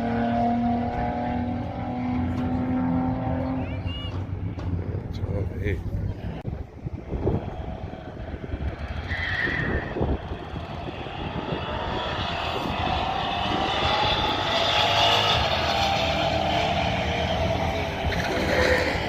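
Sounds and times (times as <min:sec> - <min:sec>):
drag race cars accelerating: 0:00.0 - 0:04.8, 0:06.1 - 0:19.0.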